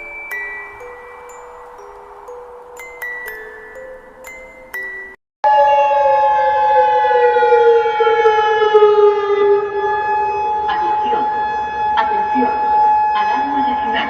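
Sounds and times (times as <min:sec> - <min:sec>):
emergency alert alarm tone: 0:00.0 - 0:02.8
short chime notes: 0:00.0 - 0:05.2.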